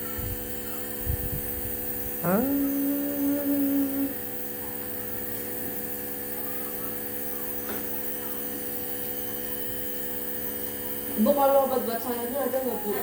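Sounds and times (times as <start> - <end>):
electrical hum: 0.0 - 13.0
person vocalising aah: 2.2 - 4.2.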